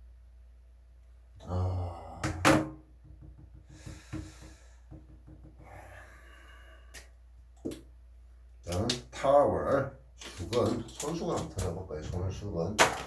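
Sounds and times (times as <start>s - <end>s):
man's wordless vocal sound: 1.4s - 2.4s
sharp knocks: 2.2s - 5.8s.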